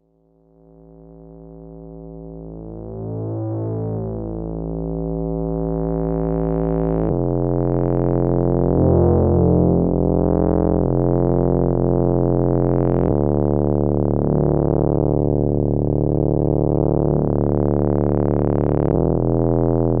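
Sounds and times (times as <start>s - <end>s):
synthesizer chords: 6.8s - 20.0s.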